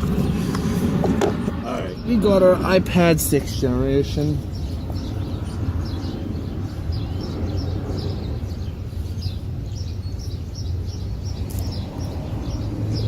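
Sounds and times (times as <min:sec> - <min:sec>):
small birds chirping: 0:00.0 - 0:13.0
steady low rumble: 0:00.0 - 0:13.0.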